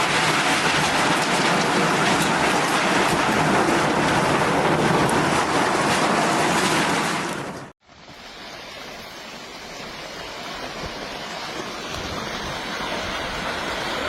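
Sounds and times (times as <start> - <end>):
landslide rumble: 0.0 - 14.0
loud steady rushing noise: 8.2 - 14.0.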